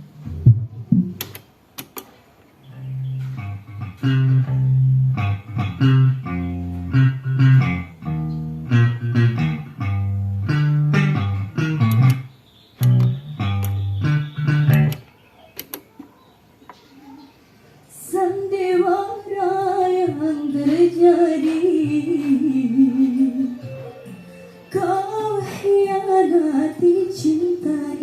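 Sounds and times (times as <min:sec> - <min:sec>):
bass guitar notes: 0:00.0 - 0:01.4, 0:02.7 - 0:15.0
sharp clicks: 0:01.0 - 0:02.2, 0:11.6 - 0:16.1
plucked guitar notes: 0:02.7 - 0:15.1.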